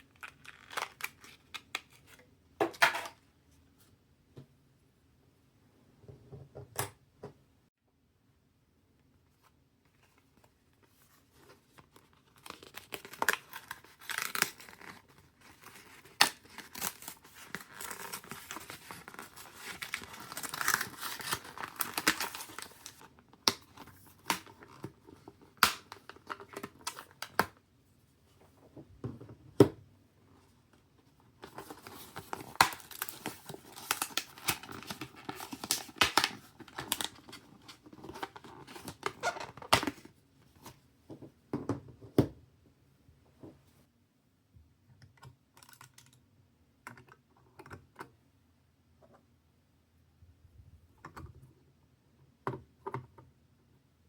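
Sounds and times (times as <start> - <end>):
plastic and paper crinkling: 10.0 - 27.2, 31.4 - 40.1.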